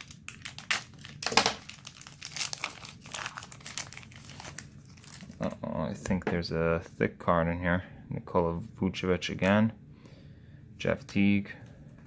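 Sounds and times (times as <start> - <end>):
plastic wrapper crinkling and tearing: 0.0 - 5.7.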